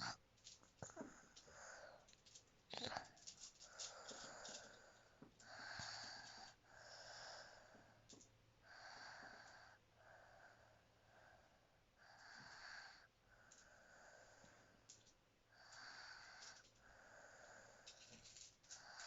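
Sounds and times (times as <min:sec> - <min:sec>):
faint sleeping breathing: 0:00.0 - 0:19.0.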